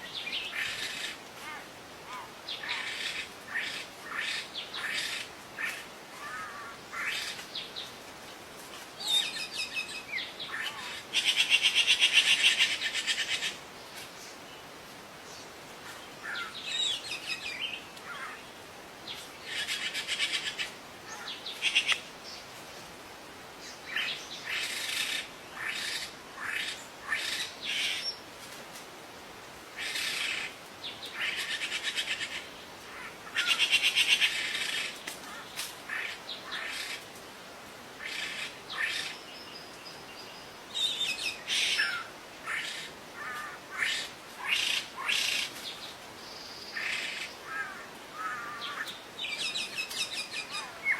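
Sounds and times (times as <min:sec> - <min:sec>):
faint background hiss: 0:00.0 - 0:50.9
songbird trills and chirps: 0:48.5 - 0:50.9.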